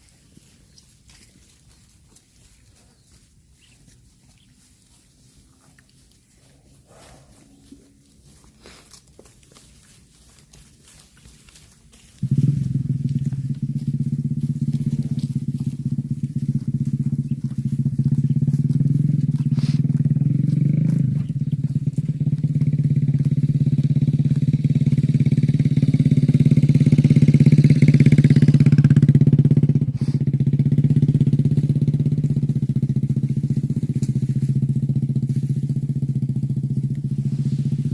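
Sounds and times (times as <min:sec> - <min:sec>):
small engine running: 0:11.9 - 0:37.9.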